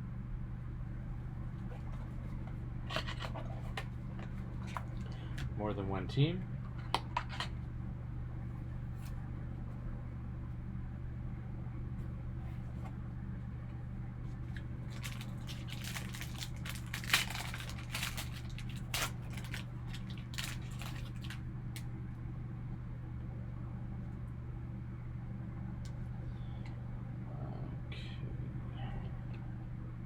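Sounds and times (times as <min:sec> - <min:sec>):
steady low hum: 0:00.0 - 0:30.0
packaging crinkling and tearing: 0:14.5 - 0:21.4.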